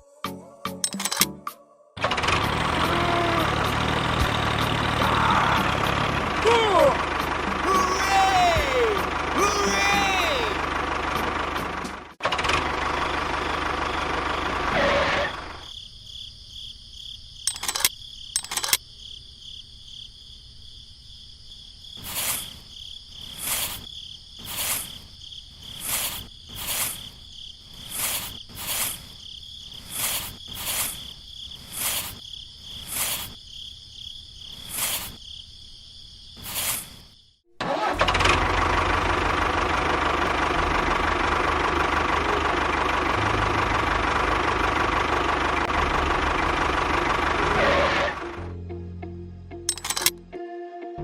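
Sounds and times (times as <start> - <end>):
small engine running: 2.0 - 15.6, 37.6 - 48.6
insects trilling: 15.3 - 37.5
pulsing insect call: 22.0 - 35.5, 36.2 - 37.4.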